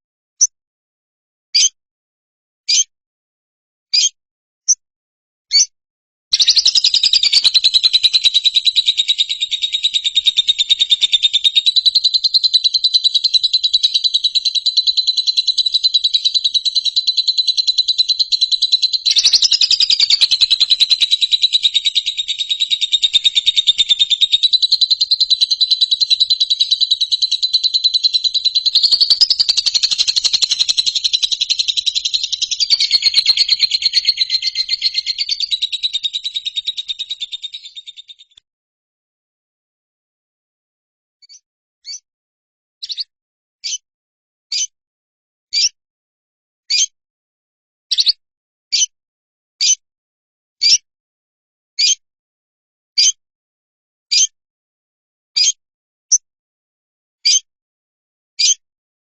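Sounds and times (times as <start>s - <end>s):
high rapidly pulsing trill: 19.2s - 36.8s
short chirps: 25.8s - 36.1s.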